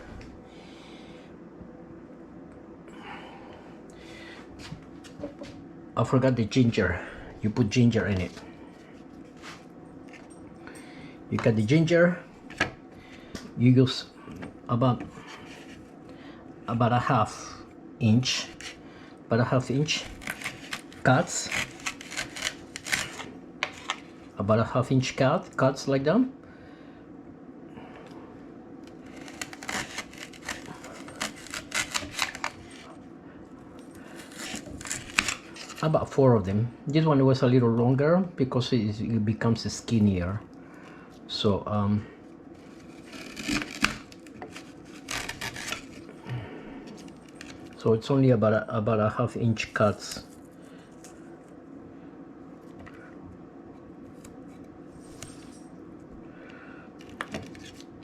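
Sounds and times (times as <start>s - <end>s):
low room hum: 0.0s - 58.0s
knife cutting ginger root: 20.0s - 24.0s, 28.9s - 32.8s.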